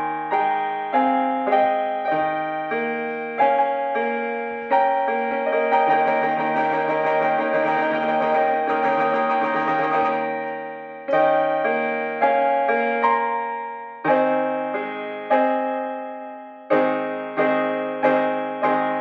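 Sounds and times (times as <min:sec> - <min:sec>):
slow gentle piano music: 0:00.0 - 0:19.0.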